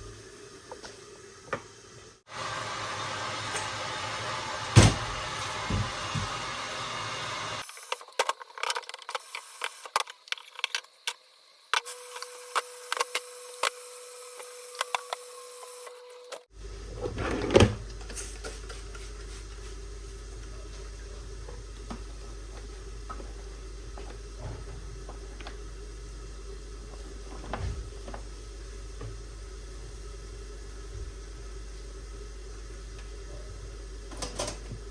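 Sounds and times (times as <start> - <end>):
loud knock: 4.8 - 6.3.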